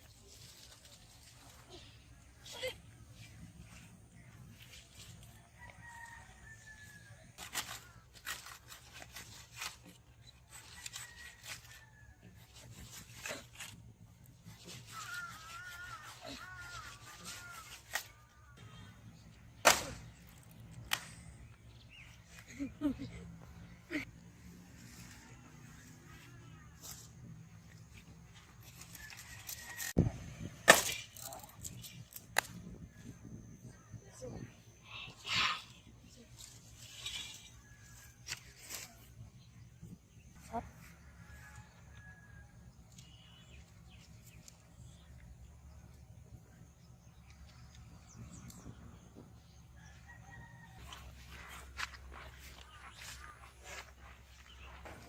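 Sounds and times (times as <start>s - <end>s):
distant rooster crowing: 5.2s - 7.6s, 28.6s - 30.2s, 40.6s - 42.8s, 49.4s - 55.0s
loud sharp crack: 19.6s - 20.1s.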